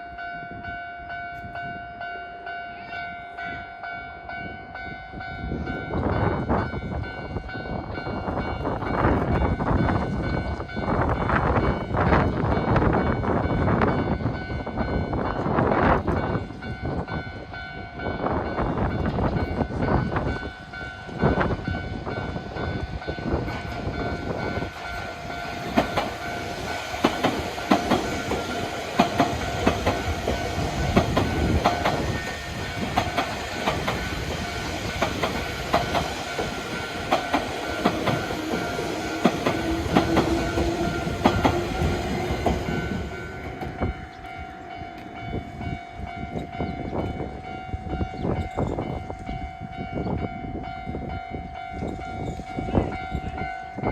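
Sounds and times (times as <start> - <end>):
crossing warning bell ringing: 0.0 - 53.9
train wheels clacking over rail joints: 23.3 - 44.4.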